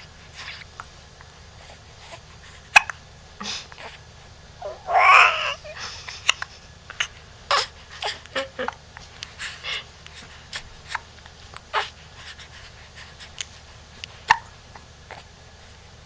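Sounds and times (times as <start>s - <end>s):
baby hiccuping: 4.6s - 5.6s
baby vocal sound: 4.6s - 5.8s.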